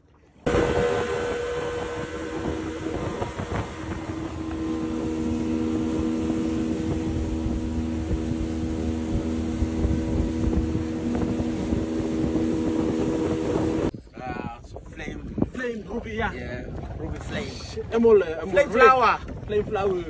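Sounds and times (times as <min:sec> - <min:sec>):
outboard motor running: 0:00.0 - 0:13.9.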